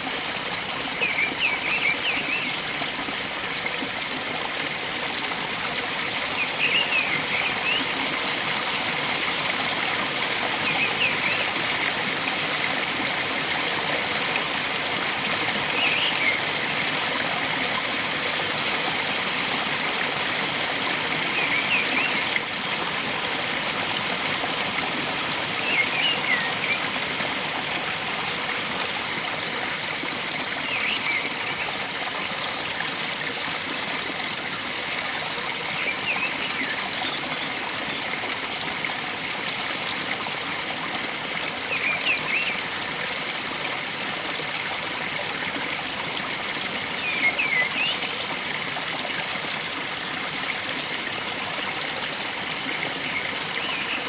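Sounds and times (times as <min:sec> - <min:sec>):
stream water flowing: 0:00.0 - 0:54.0.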